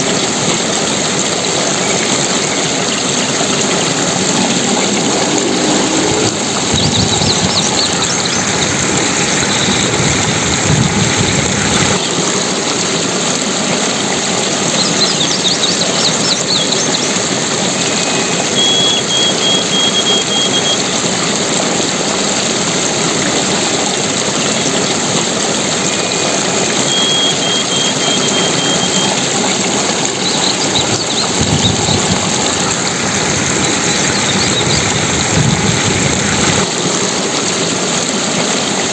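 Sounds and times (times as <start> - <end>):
rushing water: 0.0 - 38.9
faint high chirps: 18.0 - 20.8, 25.9 - 29.3.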